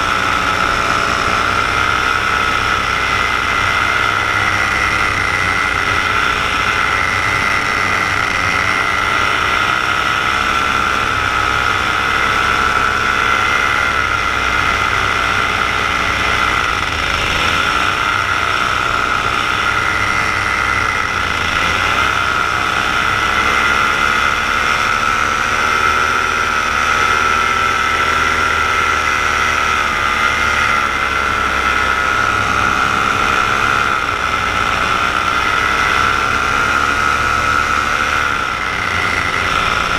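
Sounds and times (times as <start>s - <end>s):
paramotor engine droning: 0.0s - 39.9s.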